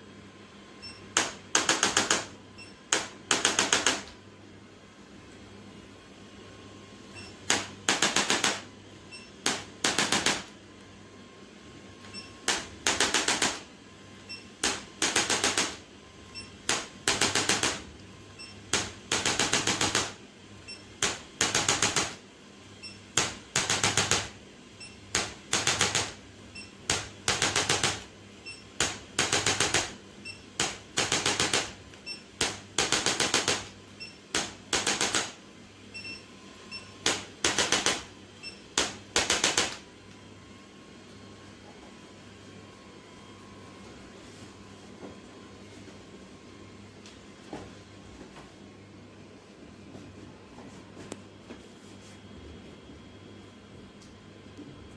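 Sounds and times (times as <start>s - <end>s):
rapid mechanical clicks: 12.5s - 13.6s, 14.6s - 15.8s, 16.7s - 17.8s, 25.2s - 26.2s.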